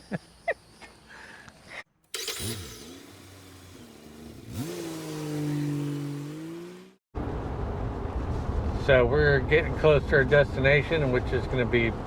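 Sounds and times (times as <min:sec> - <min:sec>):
vehicle engine revving: 0:02.1 - 0:07.5.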